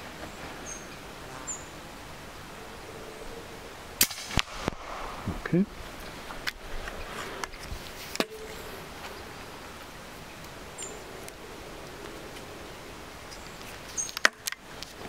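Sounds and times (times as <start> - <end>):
air rifle shot: 4.0 - 5.6.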